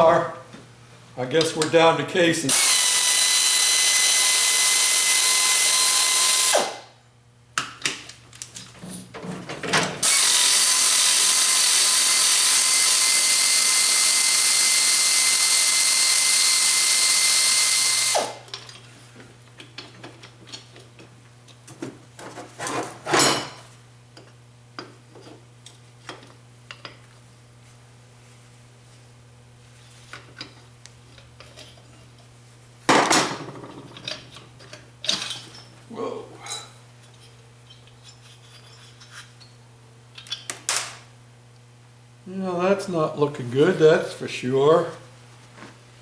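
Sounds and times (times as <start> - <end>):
power drill running: 2.5 - 6.9, 10.0 - 18.5.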